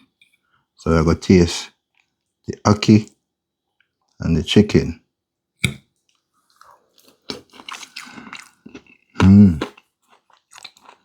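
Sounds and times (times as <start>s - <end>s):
person chewing food: 1.8s - 2.4s, 5.7s - 11.0s
person humming mmm: 9.2s - 9.7s.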